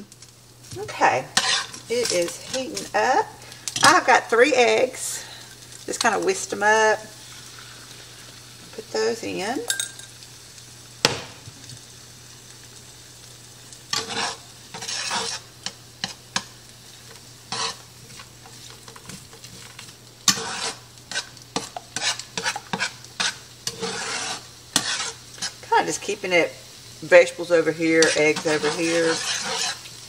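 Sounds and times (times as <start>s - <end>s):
food sizzling in a skillet: 0.0s - 30.0s
utensil scraping a pan: 0.8s - 3.0s, 13.9s - 26.1s, 27.2s - 30.0s.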